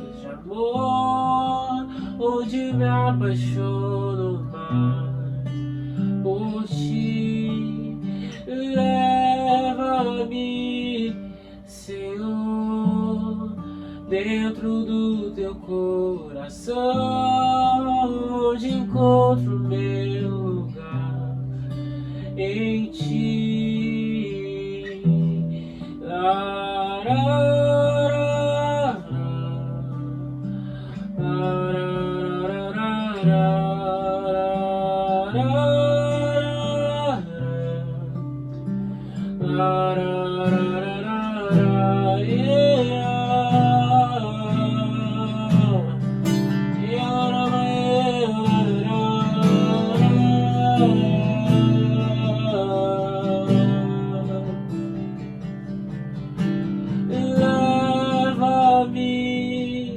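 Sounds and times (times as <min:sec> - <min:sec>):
wordless singing: 0:00.0 - 0:05.2, 0:30.9 - 0:38.1, 0:39.4 - 0:54.7, 0:56.9 - 0:59.9
acoustic guitar strumming: 0:00.0 - 0:59.9.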